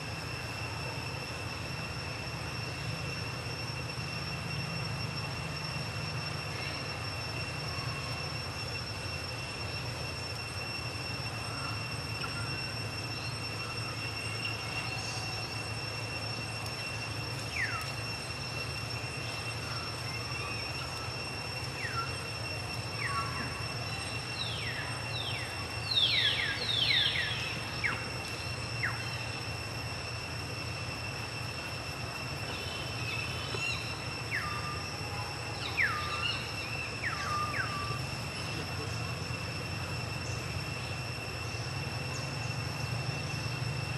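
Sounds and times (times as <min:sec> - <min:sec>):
steady high-pitched whine: 0:00.0 - 0:43.9.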